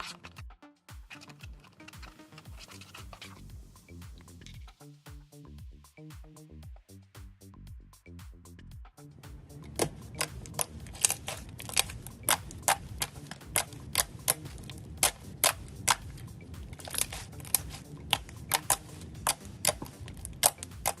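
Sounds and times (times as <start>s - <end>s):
slime clicking pops: 9.7s - 21.0s.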